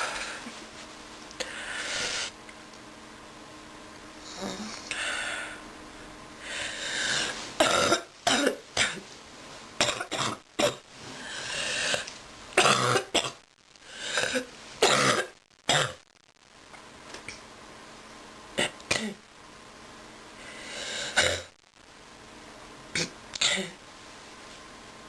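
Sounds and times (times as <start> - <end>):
noisy breaths drawn in: 1.4 - 2.4, 6.4 - 7.6, 11.0 - 12.1, 20.4 - 21.2
person coughing: 11.9 - 13.4, 14.1 - 16.0, 23.0 - 23.8.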